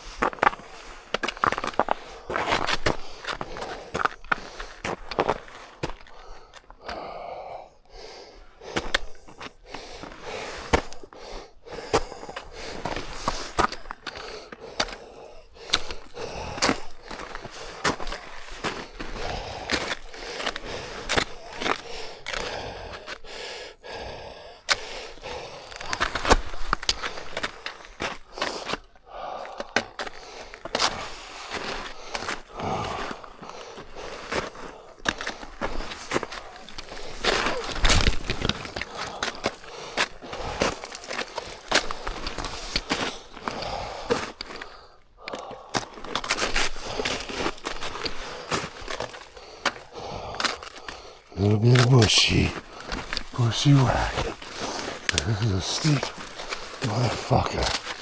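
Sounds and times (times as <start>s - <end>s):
heavy labored breathing: 1.4s - 58.0s
crunching footsteps: 45.4s - 58.0s.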